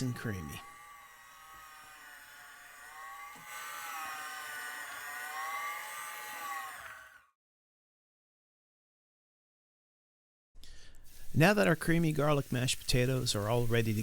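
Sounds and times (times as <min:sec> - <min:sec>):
electric mixer motor whining: 0:00.0 - 0:07.4.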